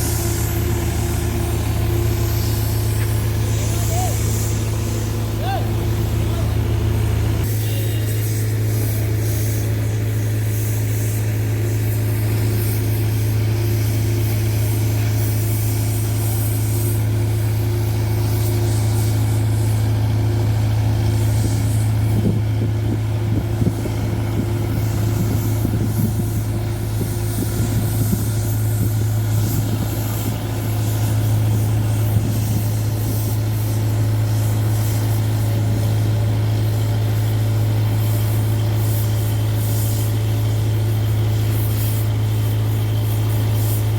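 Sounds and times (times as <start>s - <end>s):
heavy diesel engine running: 0.0s - 43.9s.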